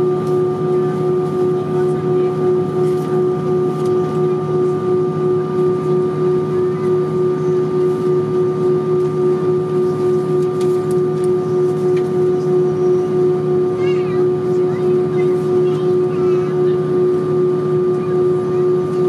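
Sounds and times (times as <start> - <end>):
aircraft cabin drone: 0.0 - 19.0.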